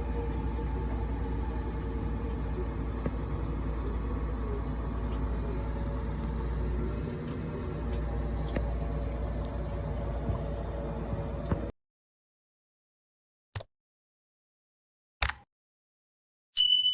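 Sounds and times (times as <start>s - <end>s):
low rumble with faint hum: 0.0s - 11.7s
small click: 15.2s - 15.4s.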